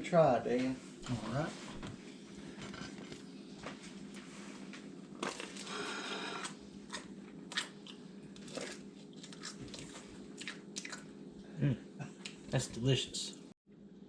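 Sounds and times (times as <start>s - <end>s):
steady low hum: 0.0s - 14.0s
bread crust crunching: 5.1s - 11.1s.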